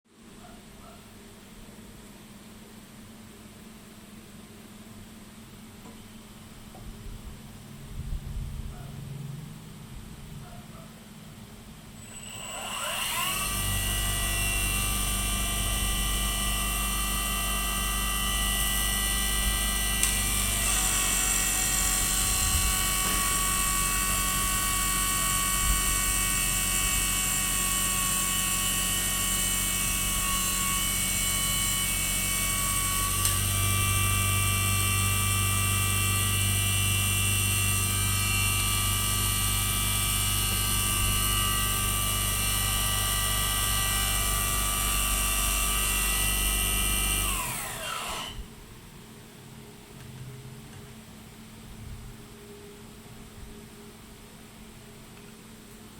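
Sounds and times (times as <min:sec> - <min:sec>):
lathe motor whining: 0:12.0 - 0:48.4.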